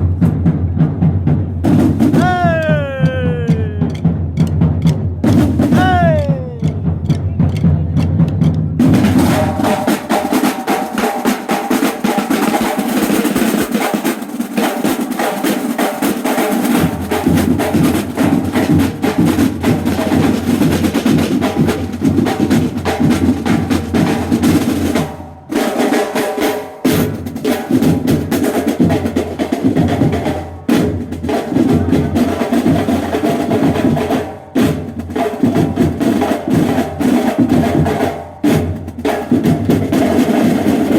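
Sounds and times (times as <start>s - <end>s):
fast snare drum rhythm: 0.0s - 40.9s
marching band playing: 0.0s - 40.9s.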